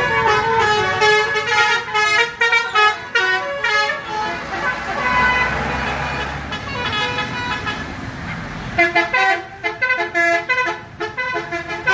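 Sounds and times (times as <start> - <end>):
bus engine: 0.0 - 11.9
bus musical horn: 0.0 - 11.9.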